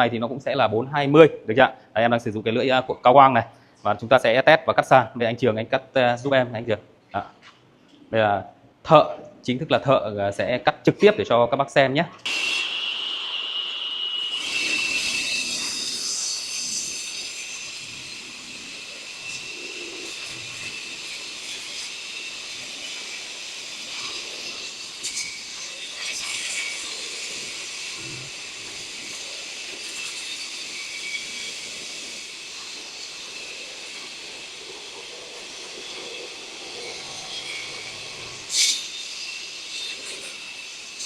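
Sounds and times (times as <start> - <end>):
concrete saw cutting concrete: 12.2 - 41.0.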